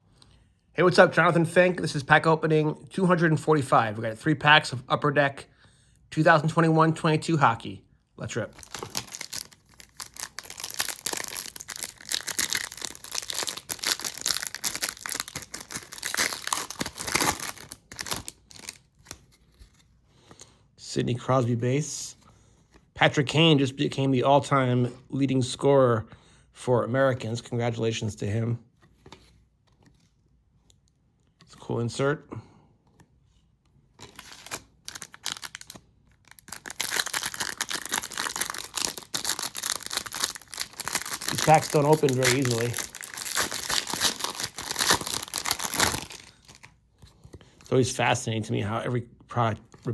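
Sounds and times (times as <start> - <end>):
trading cards rustling: 8.4 - 19.8, 34.0 - 47.7
foil wrapper tearing and crinkling: 8.6 - 19.2, 34.0 - 46.7.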